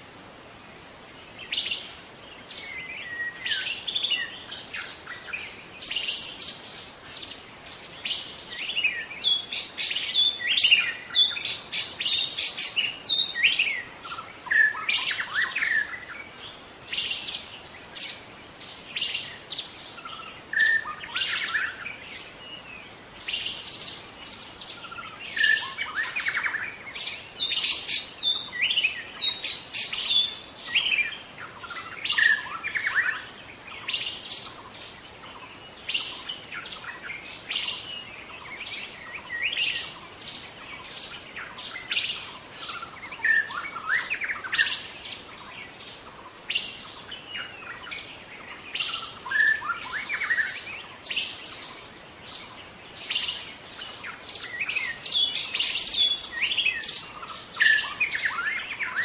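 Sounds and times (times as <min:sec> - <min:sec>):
bird singing whistled phrases: 0:20.0 - 0:21.8, 0:23.3 - 0:33.3, 0:48.8 - 0:59.0.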